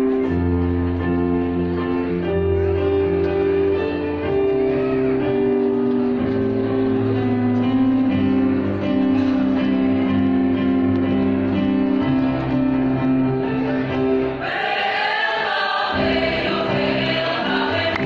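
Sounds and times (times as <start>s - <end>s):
guitar accompaniment: 0.0s - 14.4s
choir singing: 14.4s - 18.0s.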